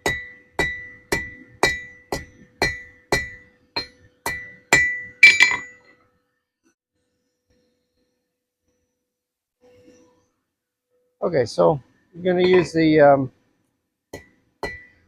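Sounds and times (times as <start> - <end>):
hammer ringing on anvil: 0.0 - 5.8, 14.6 - 15.0.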